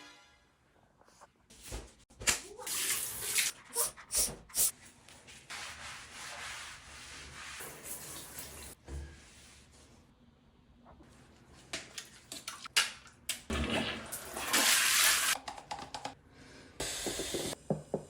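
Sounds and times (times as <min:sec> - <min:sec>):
shower water splashing: 0:05.5 - 0:08.8, 0:11.9 - 0:15.4.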